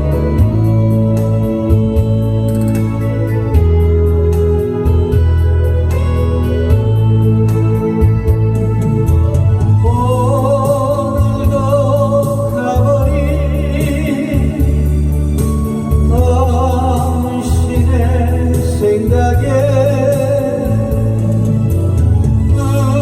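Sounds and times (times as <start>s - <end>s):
backing track with beat and bass: 0.0s - 23.0s
solo singer with vibrato: 9.8s - 23.0s.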